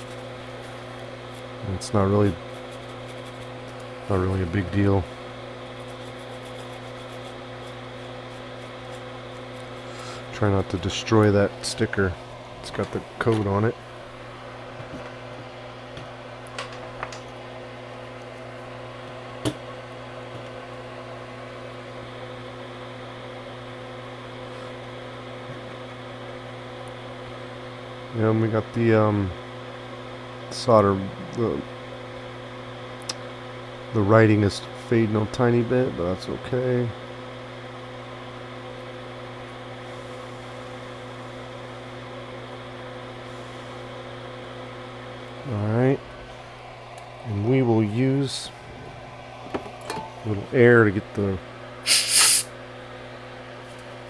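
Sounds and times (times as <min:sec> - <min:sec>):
electrical hum of equipment: 0:00.0 - 0:54.0
light hiss: 0:51.9 - 0:52.5.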